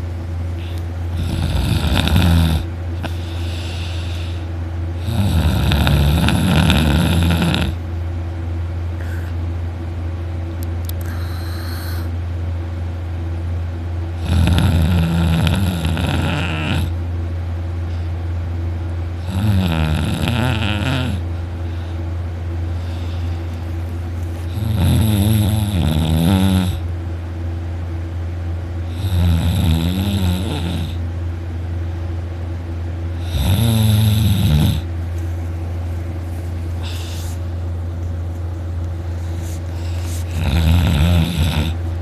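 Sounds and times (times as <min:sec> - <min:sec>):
steady low hum: 0:00.0 - 0:42.0
man snoring loudly: 0:01.1 - 0:04.4, 0:05.0 - 0:07.8, 0:14.2 - 0:17.0, 0:19.2 - 0:21.2, 0:24.5 - 0:26.9, 0:28.9 - 0:31.0, 0:33.2 - 0:34.9, 0:40.2 - 0:41.8
quiet breathing: 0:03.0 - 0:04.6, 0:09.0 - 0:09.4, 0:11.0 - 0:12.2, 0:21.5 - 0:24.5, 0:36.2 - 0:37.8, 0:39.0 - 0:40.4.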